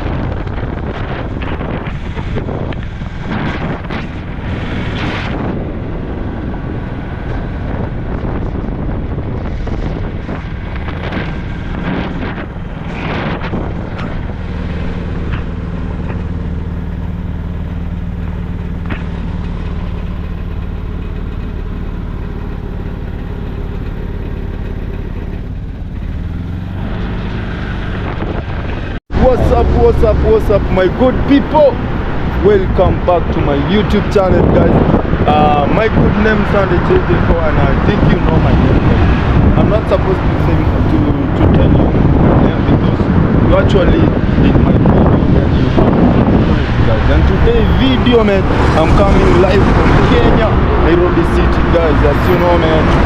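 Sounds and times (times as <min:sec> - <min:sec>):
vehicle engine running: 0:00.0 - 0:53.0
wind rushing over microphone: 0:00.0 - 0:53.0.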